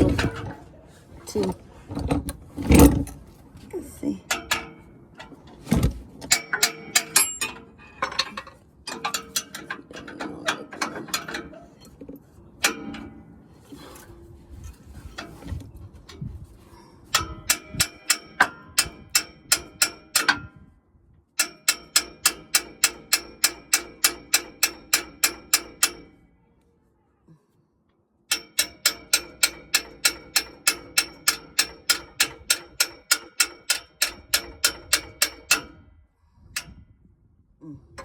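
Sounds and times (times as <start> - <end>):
hammer tapping on metal: 21.4 - 26.1.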